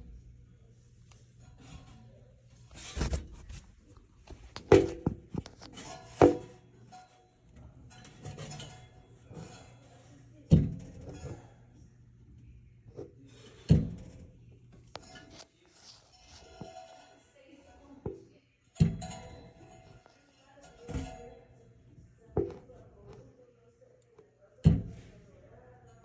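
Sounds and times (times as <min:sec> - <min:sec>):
hvac system humming: 0:00.0 - 0:26.0
metallic thunks: 0:02.6 - 0:06.5.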